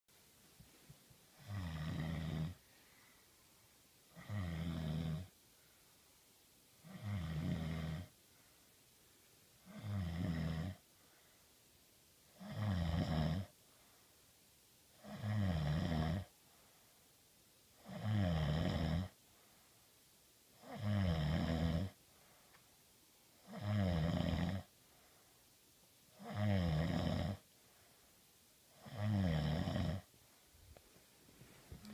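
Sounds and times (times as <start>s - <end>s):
quiet breathing: 0.2s - 12.7s, 13.4s - 15.3s, 16.2s - 18.0s, 19.0s - 23.8s, 24.5s - 26.5s, 27.3s - 31.9s
man snoring: 1.4s - 2.6s, 4.1s - 5.3s, 6.8s - 8.1s, 9.6s - 10.8s, 12.4s - 13.5s, 15.0s - 16.3s, 17.8s - 19.2s, 20.6s - 22.0s, 23.4s - 24.7s, 26.2s - 27.4s, 28.8s - 30.1s.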